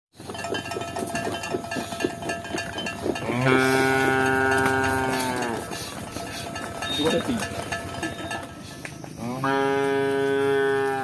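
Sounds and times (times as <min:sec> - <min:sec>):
cow mooing: 0:03.2 - 0:05.7, 0:09.2 - 0:11.0.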